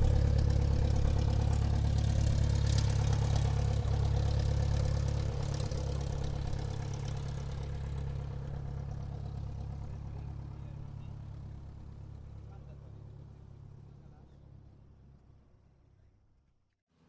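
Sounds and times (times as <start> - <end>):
airplane engine drone: 0.0 - 9.5.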